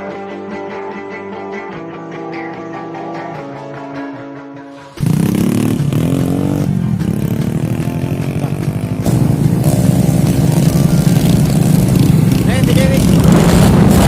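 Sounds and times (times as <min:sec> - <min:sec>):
guitar music: 0:00.0 - 0:14.0
motorcycle engines revving: 0:04.9 - 0:14.0.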